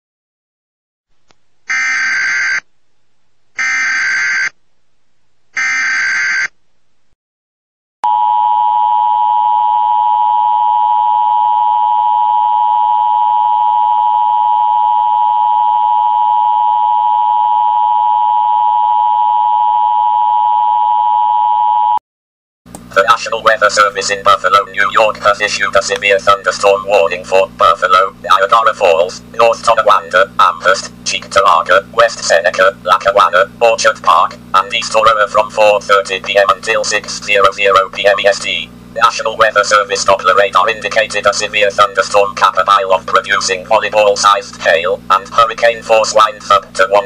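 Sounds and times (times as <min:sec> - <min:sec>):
harsh dual alert tone: 0:01.7 - 0:02.6, 0:03.6 - 0:04.6, 0:05.6 - 0:06.5, 0:08.0 - 0:22.0.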